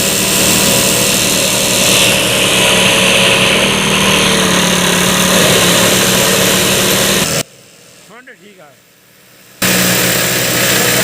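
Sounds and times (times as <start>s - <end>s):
sewing machine running: 0.0s - 7.4s, 9.6s - 11.0s.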